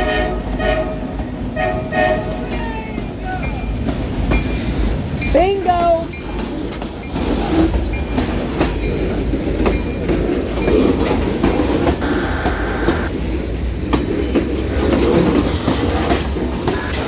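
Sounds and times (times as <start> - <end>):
wheels clacking over rail joints: 0.0 - 12.0, 13.6 - 17.0
train cars rumbling past: 0.0 - 17.0
high-pitched whine: 11.9 - 13.1.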